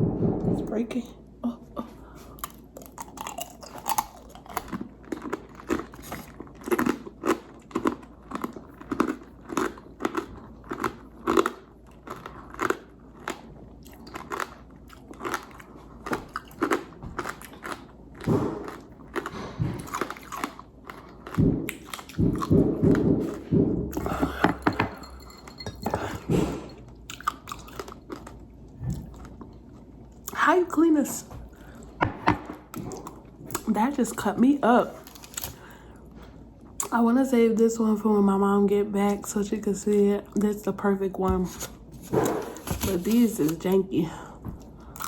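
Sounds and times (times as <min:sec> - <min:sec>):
crunching hard candy: 0:02.3 - 0:23.4.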